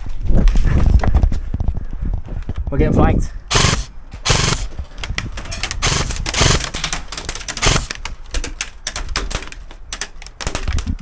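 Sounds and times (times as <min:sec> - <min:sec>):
airsoft guns firing bursts: 0:03.5 - 0:04.7, 0:05.8 - 0:08.0.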